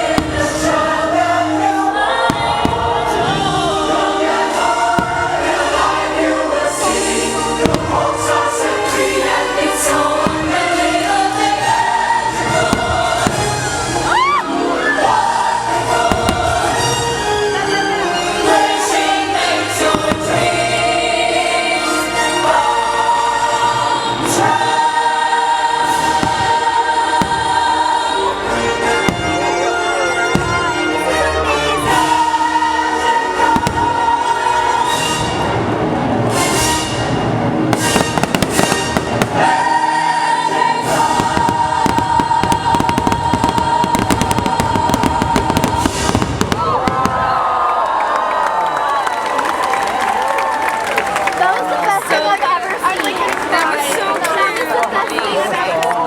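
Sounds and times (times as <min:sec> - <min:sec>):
firework bangs: 0:00.0 - 0:01.2, 0:02.2 - 0:14.3, 0:15.8 - 0:20.9, 0:25.6 - 0:28.0, 0:28.7 - 0:31.2, 0:33.4 - 0:47.6
music with choir singing: 0:00.0 - 0:46.6
firework shells bursting: 0:37.8 - 0:39.5.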